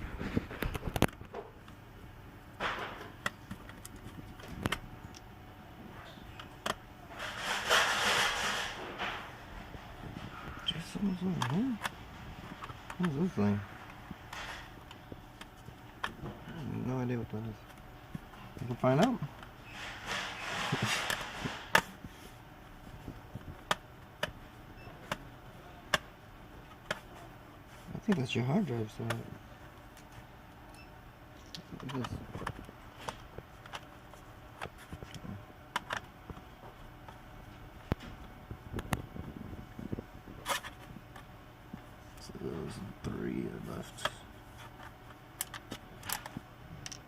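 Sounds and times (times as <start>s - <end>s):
scraping rustling noise: 0.0s - 1.0s, 7.2s - 10.7s, 19.7s - 22.4s
laptop parts clicking: 3.0s - 5.3s, 31.4s - 36.4s, 44.6s - 47.0s.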